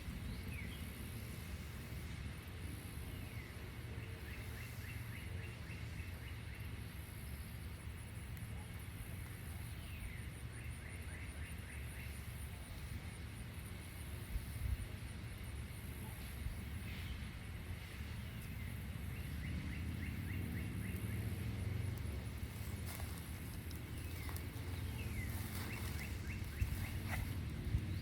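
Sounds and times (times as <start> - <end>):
wind rumble on microphone: 16.0 - 28.0
insect trill: 16.5 - 28.0.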